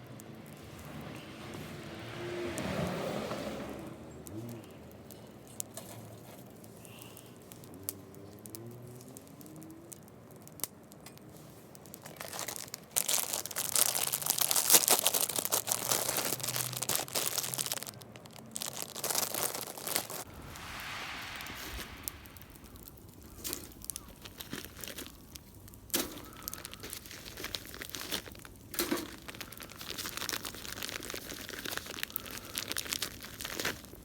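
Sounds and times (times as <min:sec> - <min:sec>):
wrapping crinkling and crumpling: 0:04.2 - 0:20.3, 0:22.6 - 0:34.0.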